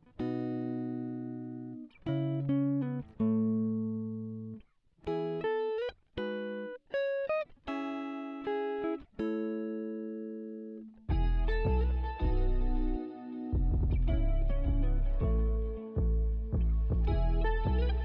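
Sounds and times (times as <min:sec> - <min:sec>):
guitar playing plucked chords: 0:00.0 - 0:18.0.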